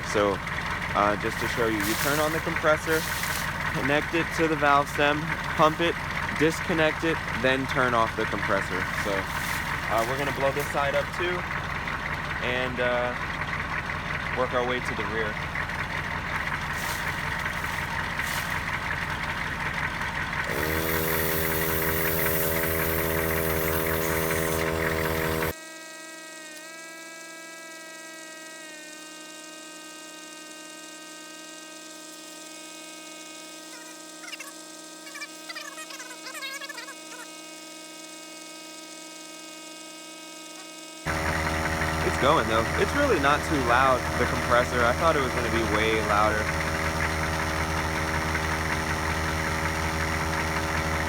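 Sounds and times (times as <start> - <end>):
truck engine idling: 0.0 - 25.5, 41.1 - 51.0
steady multi-tone hum: 0.0 - 25.6, 39.6 - 51.0
air compressor motor whine: 0.0 - 51.0
air hissing: 1.0 - 11.8, 16.4 - 19.8, 20.4 - 25.5.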